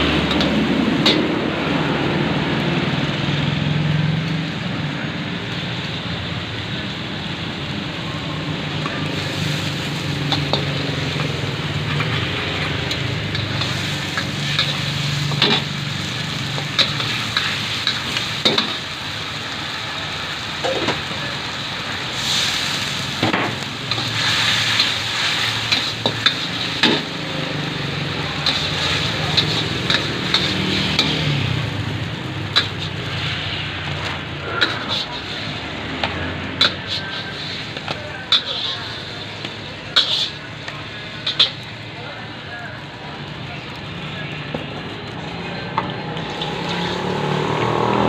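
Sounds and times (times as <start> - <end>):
rice sizzling in a wok: 0.0 - 48.0
metal spatula scraping a pan: 34.5 - 35.6, 39.9 - 40.4.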